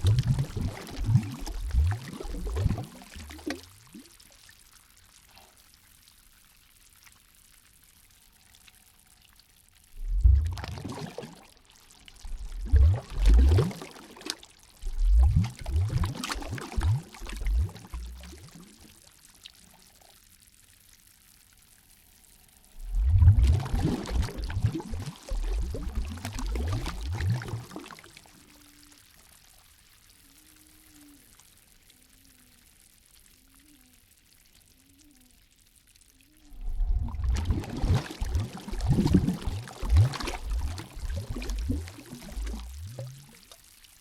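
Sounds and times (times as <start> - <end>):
faint low pulsing tone: 0.0 - 3.6, 9.9 - 10.9, 12.2 - 13.7, 14.8 - 18.8, 22.7 - 27.5, 36.4 - 43.4
water gurgling and glugging: 0.0 - 4.3, 9.8 - 19.4, 22.6 - 28.9, 36.4 - 44.0.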